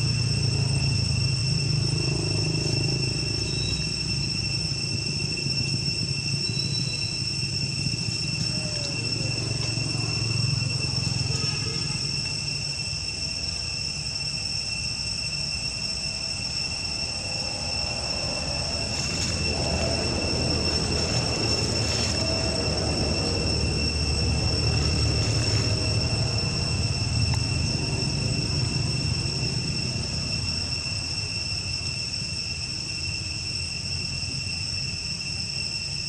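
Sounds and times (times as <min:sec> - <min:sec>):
high-pitched whine: 0:00.0 - 0:36.0
low rumble: 0:16.2 - 0:31.0.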